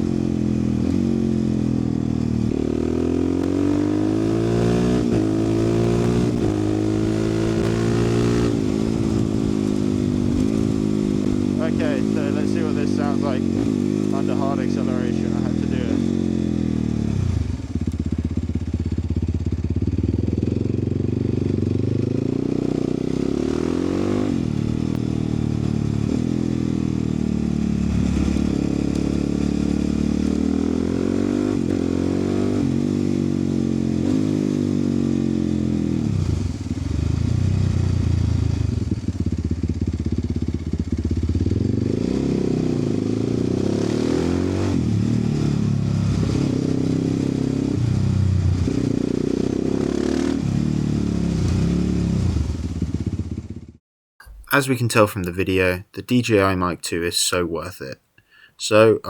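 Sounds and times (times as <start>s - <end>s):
engine accelerating hard: 2.6s - 16.4s.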